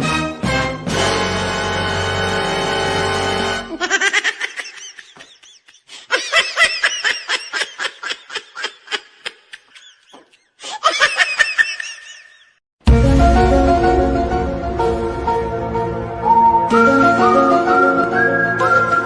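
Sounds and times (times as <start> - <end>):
music: 0.0 - 3.7, 12.8 - 19.0
high-pitched giggling laughter: 3.7 - 12.6.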